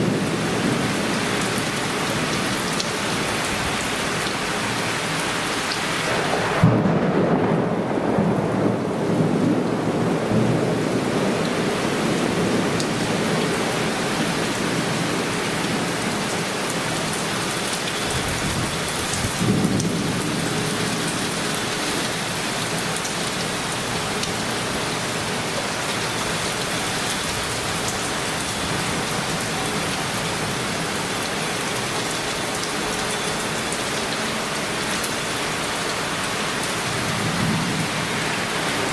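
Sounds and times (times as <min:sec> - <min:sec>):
heavy rain: 0:00.0 - 0:38.9
thunder rumbling: 0:06.1 - 0:13.4, 0:18.1 - 0:22.9.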